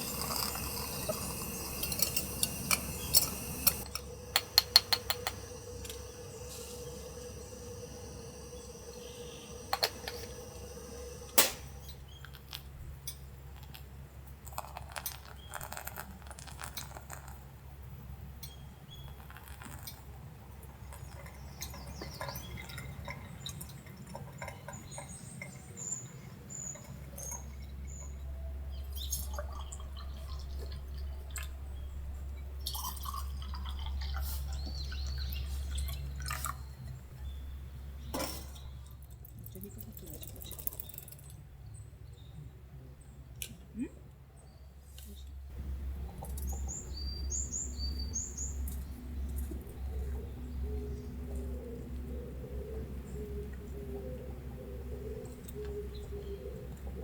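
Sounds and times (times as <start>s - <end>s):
glass clinks and taps: 0.0s - 6.0s
liquid dripping: 0.0s - 11.8s, 29.0s - 32.0s, 32.6s - 36.7s.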